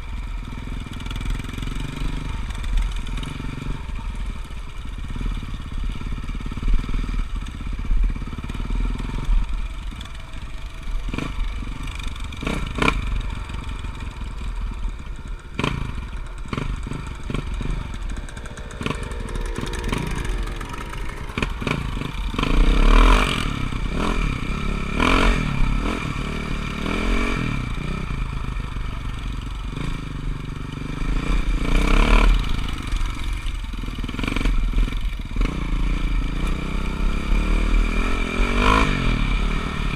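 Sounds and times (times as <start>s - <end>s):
dirt bike engines revving: 10.2s - 28.9s.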